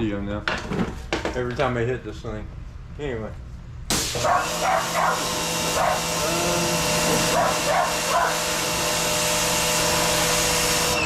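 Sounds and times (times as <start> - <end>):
pressure washer spray hiss: 3.9 - 10.9
motor hum: 4.0 - 11.0
dog barking: 4.2 - 6.3, 7.1 - 8.5.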